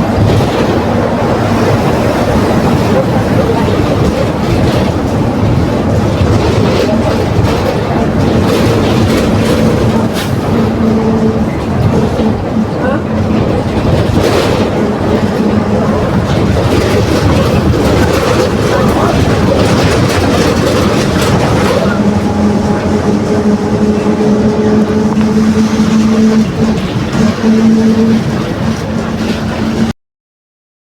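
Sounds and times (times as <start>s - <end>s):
bus running with road noise: 0.0s - 30.0s
droning differential whine: 7.8s - 29.2s.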